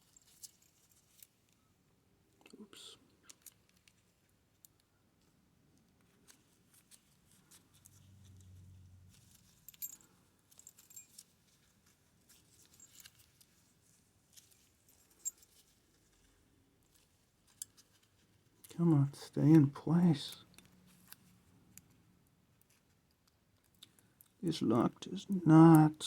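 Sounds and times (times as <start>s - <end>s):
light metallic clicks and scrapes: 3.2s - 18.7s, 20.3s - 22.0s.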